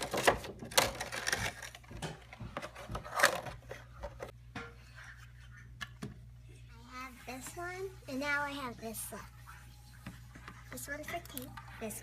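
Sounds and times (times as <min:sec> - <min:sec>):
packaging rustling and clicking: 0:00.0 - 0:04.2.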